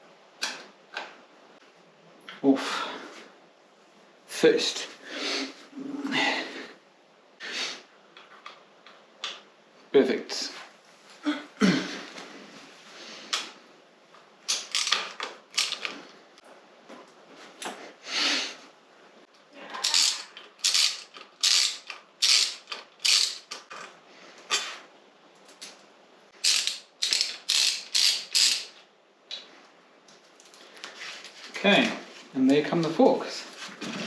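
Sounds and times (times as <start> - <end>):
ratchet wrench clicking: 14.5 - 15.9, 19.9 - 23.6, 26.4 - 28.8.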